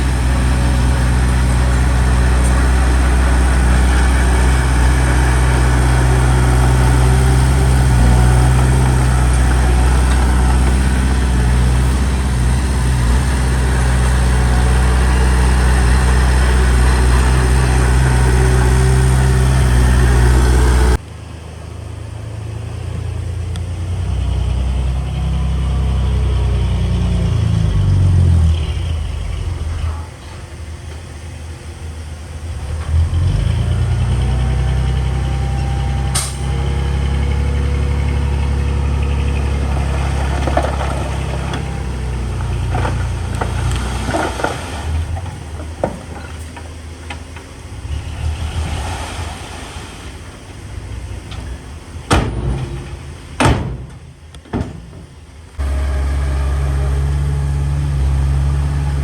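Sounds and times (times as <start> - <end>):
heavy diesel engines working: 0.0 - 59.0.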